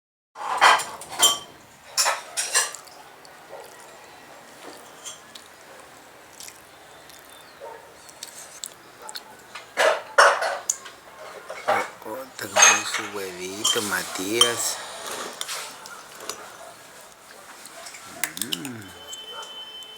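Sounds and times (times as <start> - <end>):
cutlery clinking on plates: 0.4 - 3.0, 4.6 - 5.5, 9.5 - 16.7.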